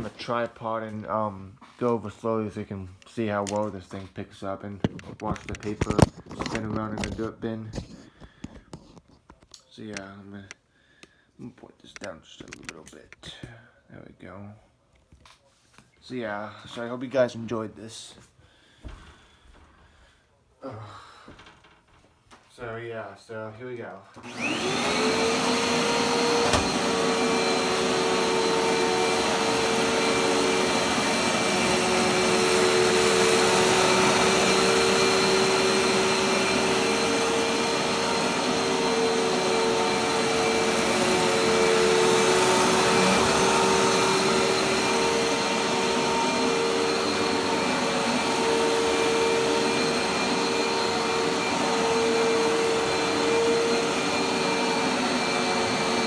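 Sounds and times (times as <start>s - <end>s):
vacuum cleaner motor whine: 24.2s - 56.0s.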